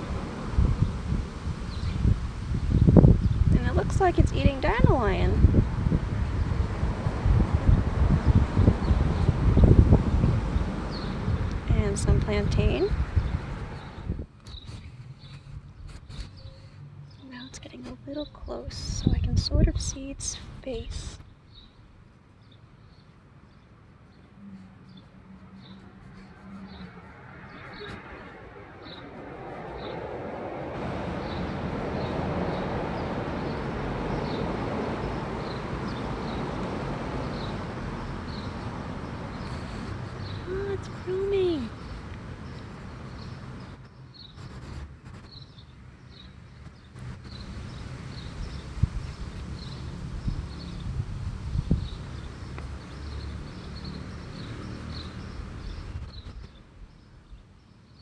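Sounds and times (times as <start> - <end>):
passing vehicle rumble: 0.0 - 21.6, 23.3 - 57.4
bird chirping: 1.6 - 2.1, 12.4 - 30.1, 37.3 - 44.6.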